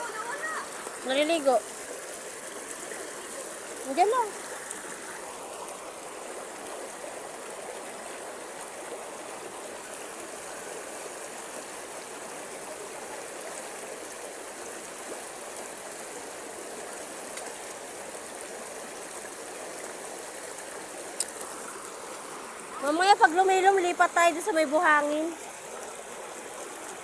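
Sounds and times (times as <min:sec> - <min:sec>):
stream water flowing: 0:00.0 - 0:27.0.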